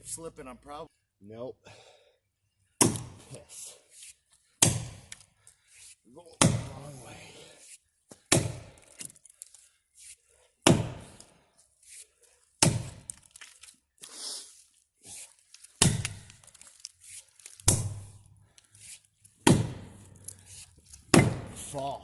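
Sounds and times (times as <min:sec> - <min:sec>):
axe chopping tree trunk: 0:02.8 - 0:03.3, 0:04.6 - 0:05.3, 0:06.4 - 0:06.9, 0:08.1 - 0:09.1, 0:10.6 - 0:11.3, 0:12.6 - 0:13.4, 0:15.8 - 0:16.4, 0:17.6 - 0:18.2, 0:19.4 - 0:20.2, 0:21.0 - 0:21.8.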